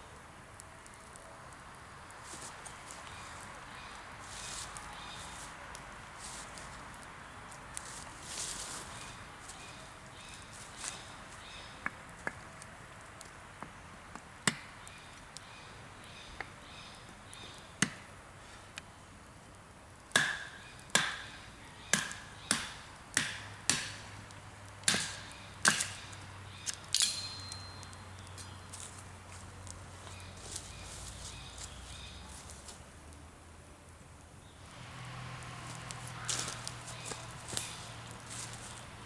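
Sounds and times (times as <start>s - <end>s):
blade chopping wood: 20.2s - 21.3s, 22.0s - 24.0s, 24.8s - 26.0s.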